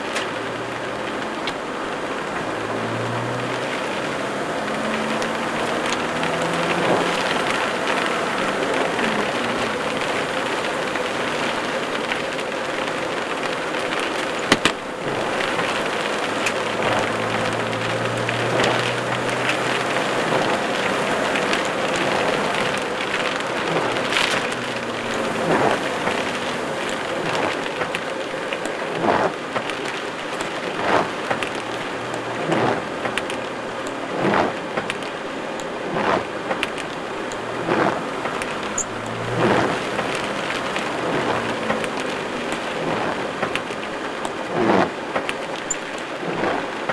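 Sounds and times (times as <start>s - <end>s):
steady rain falling: 0.0s - 46.9s
drips and splashes: 2.4s - 35.2s.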